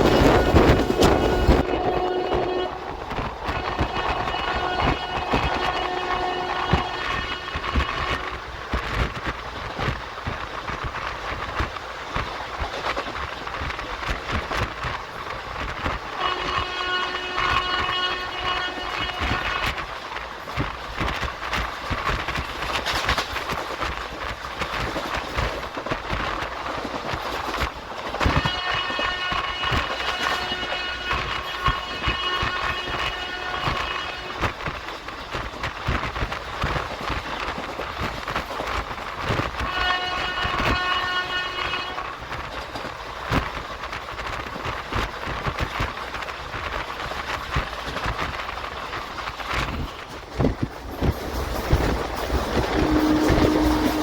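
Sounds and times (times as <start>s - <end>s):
train horn blast: 0.0s - 8.4s, 16.2s - 19.8s, 28.3s - 34.7s, 39.6s - 42.4s, 51.7s - 54.0s
train coach rumbling on track: 0.0s - 54.0s
wheels clicking over rail joints: 0.0s - 54.0s.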